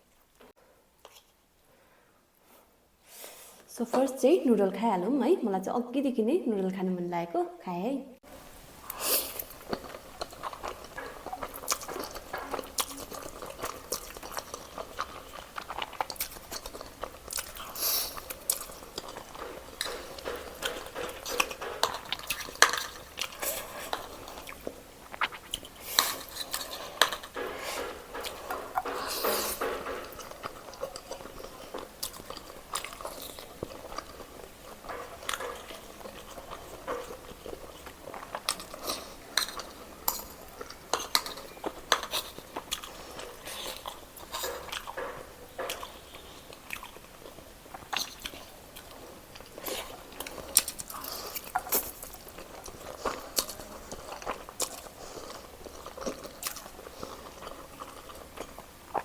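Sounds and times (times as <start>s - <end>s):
chewing and biting: 8.8s - 59.0s
cutlery clicking and scraping dish: 9.6s - 24.6s, 25.6s - 46.5s.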